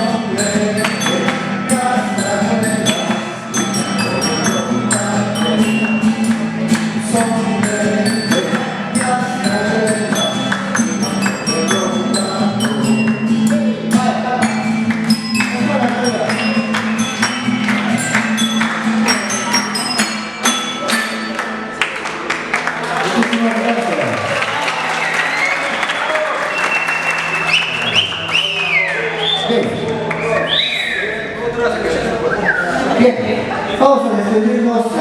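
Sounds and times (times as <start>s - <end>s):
quick percussion beat: 0.0s - 21.7s
tuned tubes ringing notes: 0.0s - 21.8s.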